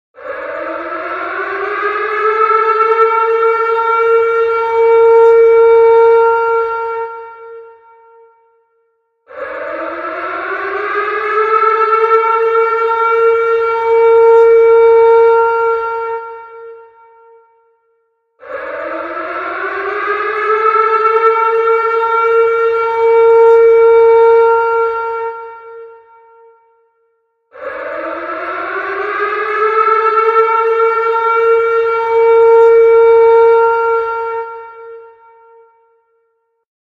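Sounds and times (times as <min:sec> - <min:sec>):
tornado siren wailing: 0:00.2 - 0:08.5, 0:09.3 - 0:17.6, 0:18.4 - 0:26.7, 0:27.5 - 0:36.0.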